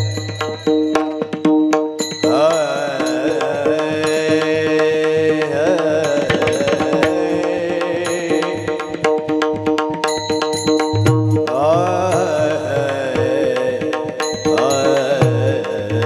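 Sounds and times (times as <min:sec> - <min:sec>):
drum strokes: 0:00.0 - 0:13.3
person singing sliding line: 0:02.2 - 0:09.3, 0:11.5 - 0:16.0.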